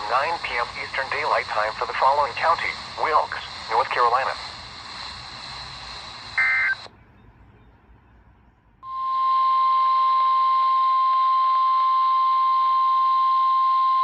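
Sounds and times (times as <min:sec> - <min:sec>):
radio hiss: 0:00.0 - 0:06.9
steady high alarm tone: 0:06.1 - 0:06.9, 0:08.8 - 0:14.0.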